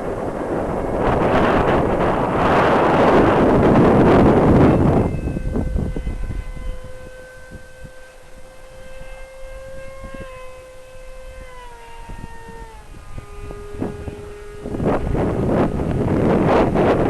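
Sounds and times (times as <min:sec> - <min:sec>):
electric ducted fan whining: 0:00.0 - 0:17.0
wind buffeting microphone: 0:00.0 - 0:17.0.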